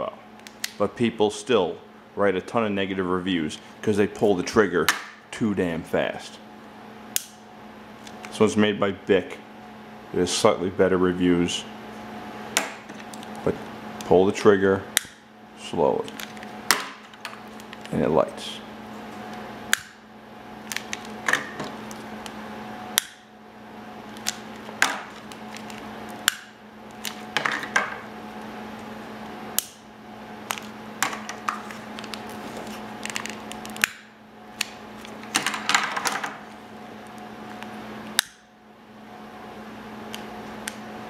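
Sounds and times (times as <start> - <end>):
steady hum: 0.0 - 41.0.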